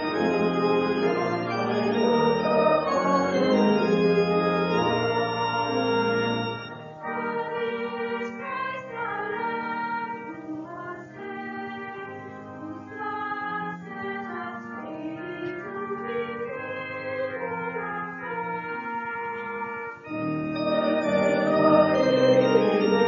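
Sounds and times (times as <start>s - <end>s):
voices singing: 0.0s - 12.2s, 20.1s - 23.0s
church organ playing a hymn: 0.0s - 23.0s.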